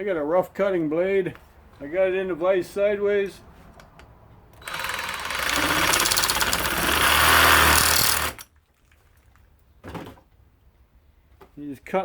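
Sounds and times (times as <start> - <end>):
power saw cutting plastic: 4.6 - 8.5.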